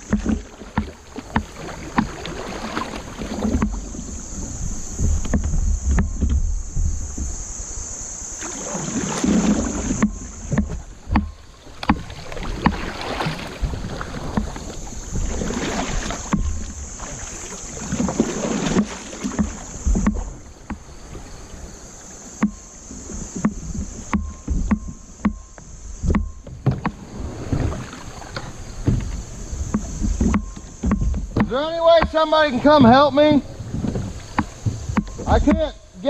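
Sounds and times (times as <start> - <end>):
flood water rushing and splashing: 0.0 - 7.3, 8.2 - 24.7, 25.9 - 36.0
sharp knocks: 3.4 - 3.9, 5.0 - 7.4, 9.8 - 13.4, 14.3 - 14.7, 16.2 - 16.8, 18.6 - 20.9, 22.4 - 22.7, 23.4 - 35.8.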